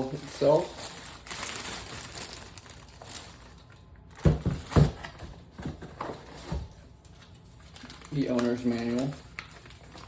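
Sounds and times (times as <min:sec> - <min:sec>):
packaging rustling: 0:00.0 - 0:10.0
objects thumping and knocking: 0:04.2 - 0:06.7.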